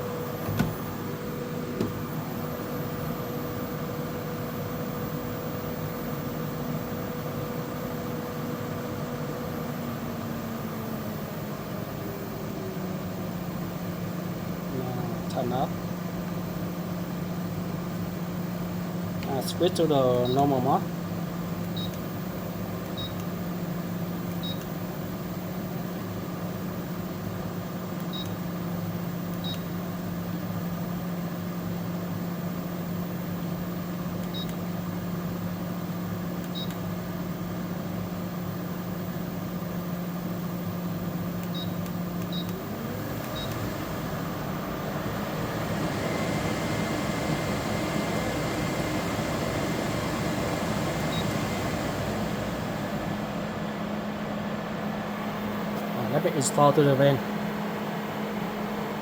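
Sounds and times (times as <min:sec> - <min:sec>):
air conditioner humming: 0:00.0 - 0:59.0
high whine: 0:42.4 - 0:59.0.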